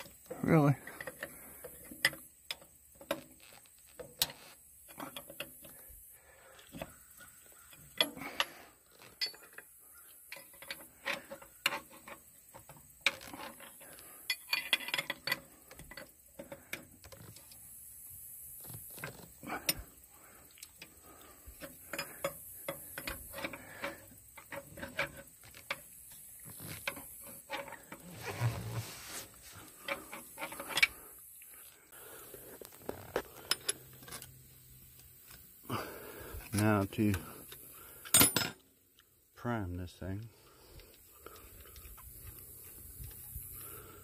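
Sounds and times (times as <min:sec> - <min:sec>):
hand tools clicking and clinking: 0:06.5 - 0:17.7, 0:18.8 - 0:28.5, 0:29.6 - 0:31.2, 0:32.6 - 0:34.4, 0:36.5 - 0:38.7.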